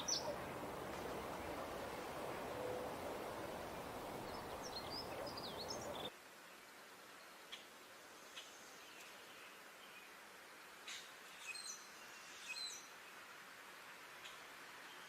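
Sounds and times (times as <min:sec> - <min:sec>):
songbirds chirping: 0:00.0 - 0:06.1
background hiss: 0:00.0 - 0:15.0.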